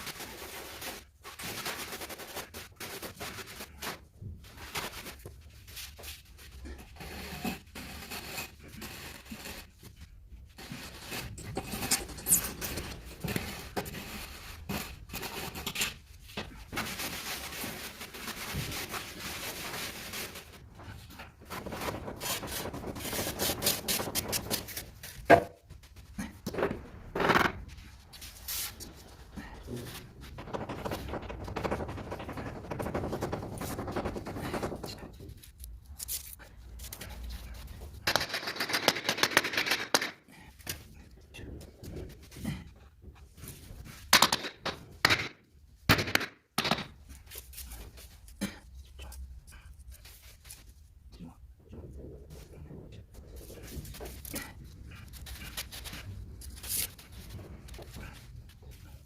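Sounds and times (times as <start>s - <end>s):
trowel scraping cement: 4.7s - 10.0s.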